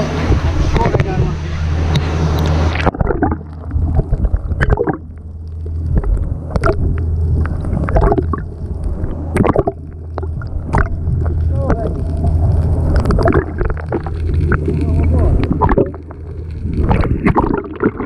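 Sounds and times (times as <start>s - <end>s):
boat engine idling: 0.0s - 2.8s
wind on microphone: 0.0s - 5.0s, 5.7s - 18.0s
water sloshing against hull: 0.0s - 18.0s.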